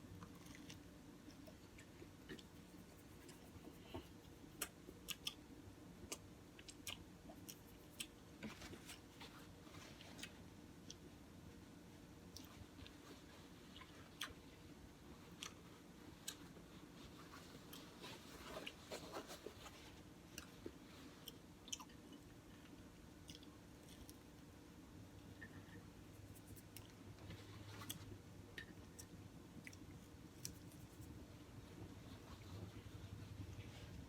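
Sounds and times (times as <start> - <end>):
faint low hum: 0.0 - 34.0
mouth clicks and smacks: 4.5 - 5.4
person chewing: 4.5 - 5.4, 6.1 - 8.2, 15.3 - 16.6, 20.3 - 24.2.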